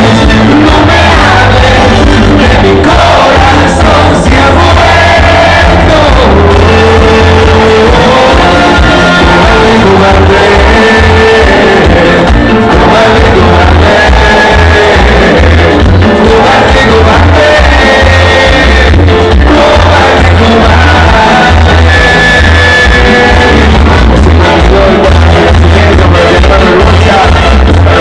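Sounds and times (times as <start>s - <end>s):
crowd shouting: 0.0s - 12.0s
heavy bass beat: 0.0s - 28.0s
loud music with singing: 0.0s - 28.0s.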